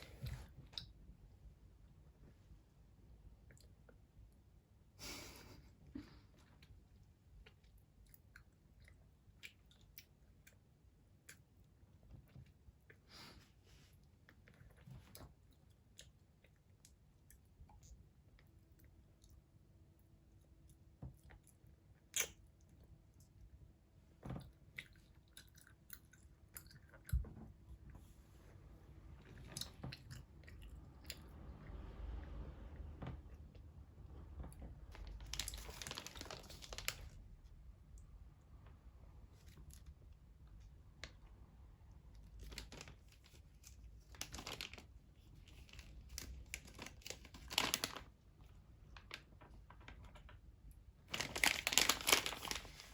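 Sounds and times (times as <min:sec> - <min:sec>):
plastic packet crinkling: 0:34.9 - 0:37.2, 0:42.4 - 0:48.1, 0:51.1 - 0:52.9.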